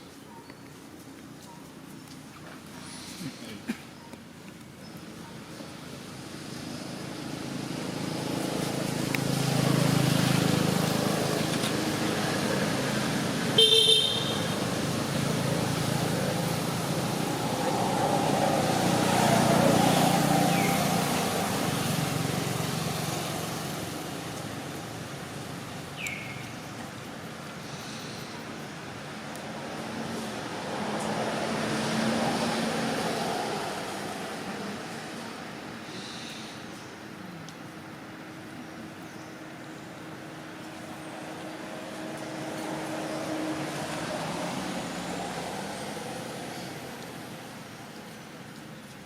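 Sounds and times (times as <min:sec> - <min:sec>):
motor vehicles passing: 0:00.6 - 0:49.0.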